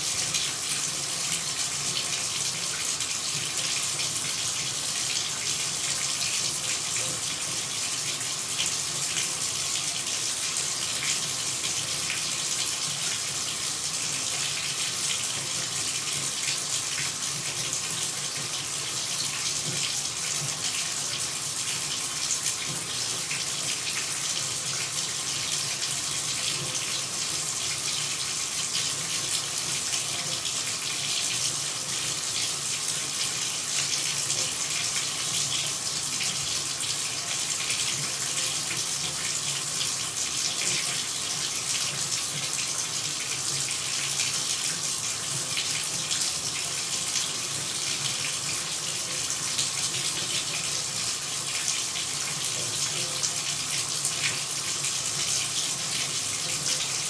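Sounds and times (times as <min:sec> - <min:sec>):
water running: 0:00.0 - 0:57.0.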